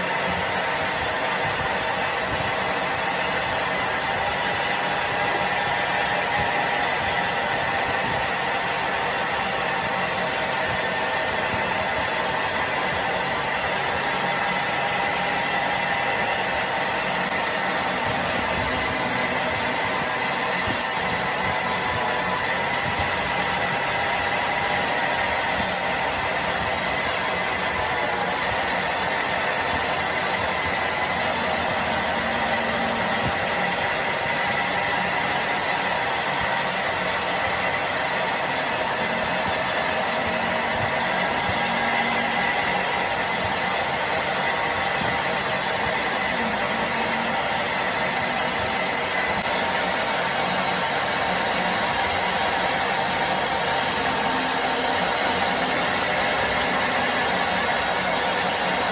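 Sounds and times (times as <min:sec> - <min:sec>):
machine running with whine: 0:00.0 - 0:58.9.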